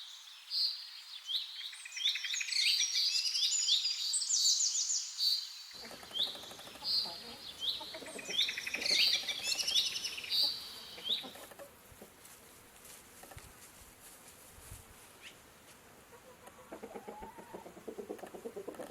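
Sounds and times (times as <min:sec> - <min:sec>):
birds chirping: 0:00.0 - 0:12.6.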